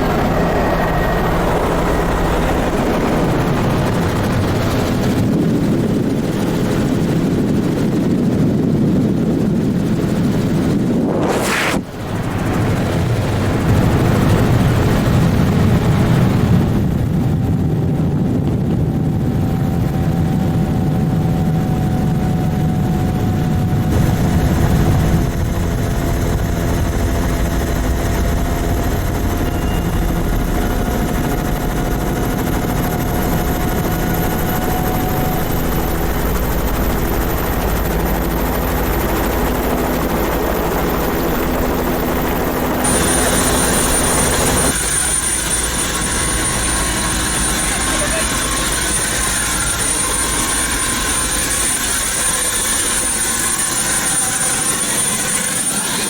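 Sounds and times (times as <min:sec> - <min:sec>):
helicopter engine and rotor drone: 0:00.0 - 0:56.0
high whine: 0:10.0 - 0:16.0, 0:23.8 - 0:56.0.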